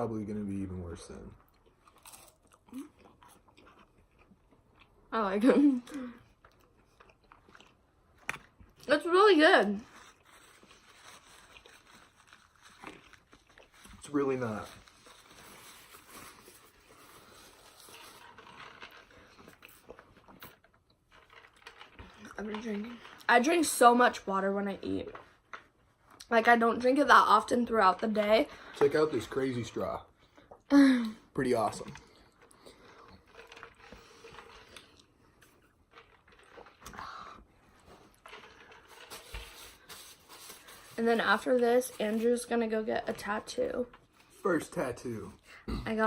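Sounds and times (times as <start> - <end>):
chewing: 1.4 - 5.1, 5.9 - 8.9, 11.4 - 14.0, 31.8 - 38.6
small clicks and rustles: 17.7 - 23.3.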